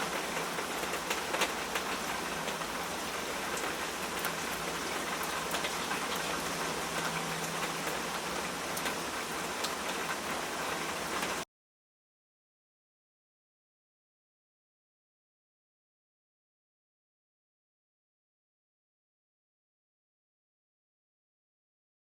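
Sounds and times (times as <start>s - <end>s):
steady rain falling: 0.0s - 11.5s.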